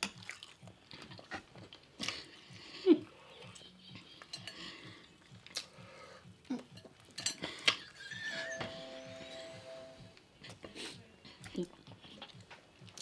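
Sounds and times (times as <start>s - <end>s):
cutlery and dishes clinking: 4.1s - 4.8s, 6.6s - 9.9s.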